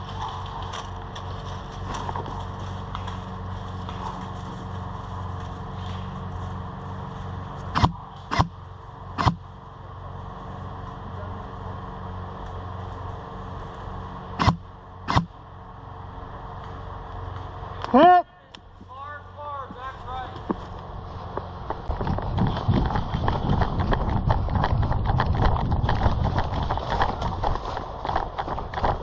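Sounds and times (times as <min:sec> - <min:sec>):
steady low hum: 0:00.0 - 0:29.0
airsoft gun shots: 0:07.8 - 0:08.5, 0:09.2 - 0:09.4, 0:14.4 - 0:15.3.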